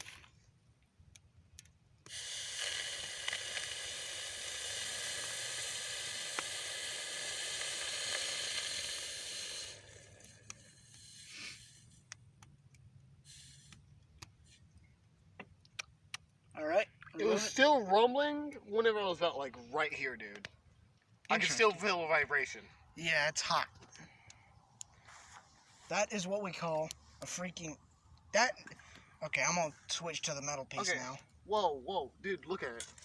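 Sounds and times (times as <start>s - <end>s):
faint clicks: 0.0s - 2.2s, 10.0s - 16.4s, 23.8s - 25.0s
hot metal hissing in water: 2.1s - 12.1s, 13.3s - 13.8s.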